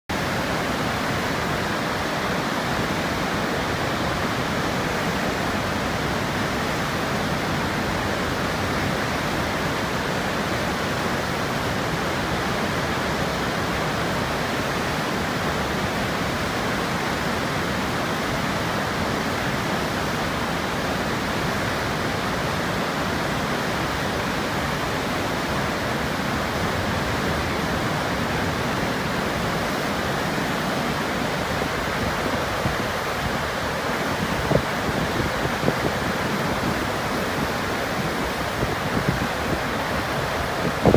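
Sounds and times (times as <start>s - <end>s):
water pouring over dam spillway: 0.1s - 40.9s.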